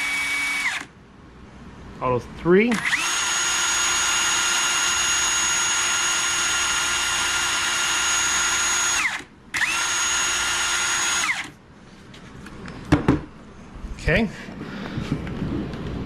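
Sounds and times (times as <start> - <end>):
impact wrench motor whine: 0.0 - 0.9, 2.7 - 11.6.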